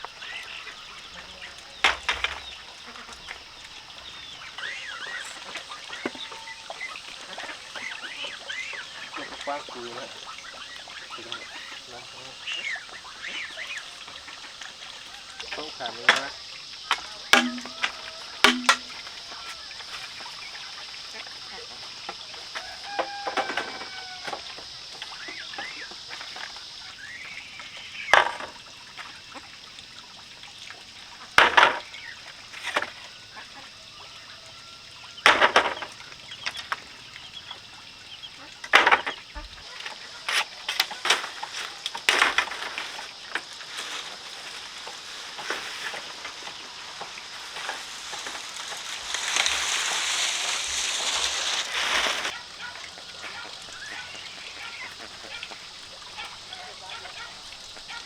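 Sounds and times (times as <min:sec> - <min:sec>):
high insect drone: 0:00.0 - 0:58.0
sharp knocks: 0:17.4 - 0:19.0
rushing hissing noise: 0:43.0 - 0:52.4.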